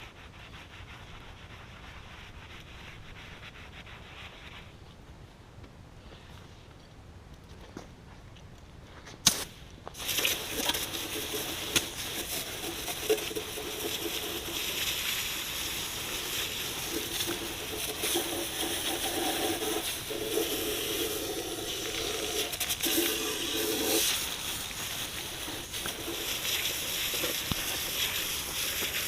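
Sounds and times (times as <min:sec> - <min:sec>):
sharp click: 0:09.2 - 0:09.5
water sloshing and splashing: 0:10.0 - 0:15.0.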